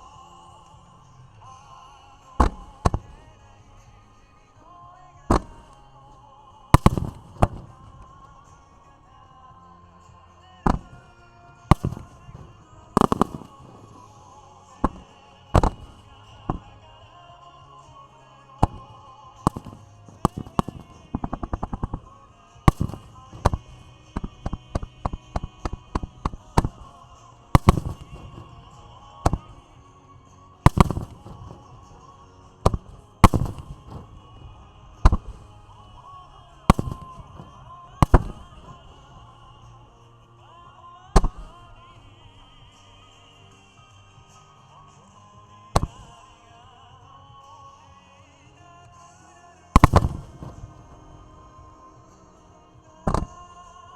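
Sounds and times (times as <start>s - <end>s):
fireworks bursting: 0.0s - 9.2s, 10.0s - 17.0s, 18.6s - 40.2s, 41.0s - 43.2s, 45.7s - 46.4s, 49.8s - 53.9s
rapid cracking reports: 6.7s - 8.6s, 11.7s - 14.2s, 14.8s - 16.7s, 18.6s - 29.8s, 30.6s - 39.8s, 49.8s - 52.2s.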